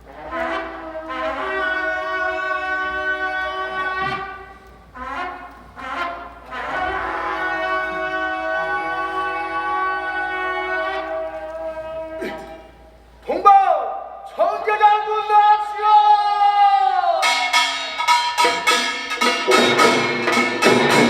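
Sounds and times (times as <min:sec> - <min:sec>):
horns blowing long notes: 0:00.0 - 0:13.2.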